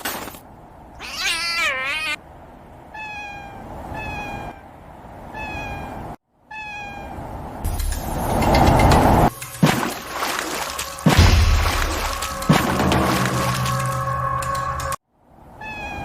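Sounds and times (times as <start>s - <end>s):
kitten mewing: 1.0s - 2.2s.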